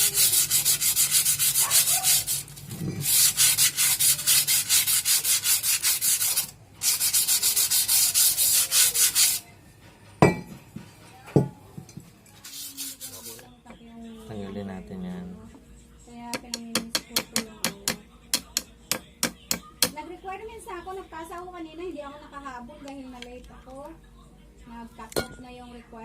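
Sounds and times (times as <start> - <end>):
sandpaper scraping brake lining: 0.0 - 9.4, 12.4 - 13.4.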